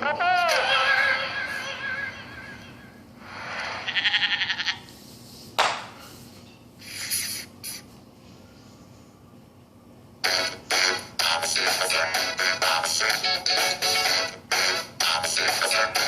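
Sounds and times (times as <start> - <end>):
sheep bleating: 3.9 - 4.9.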